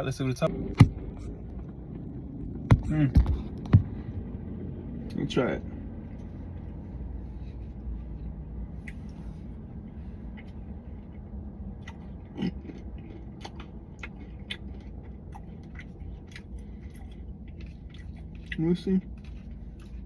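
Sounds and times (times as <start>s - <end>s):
steady low hum: 0.0s - 20.0s
person chewing crunchy food: 8.8s - 20.0s.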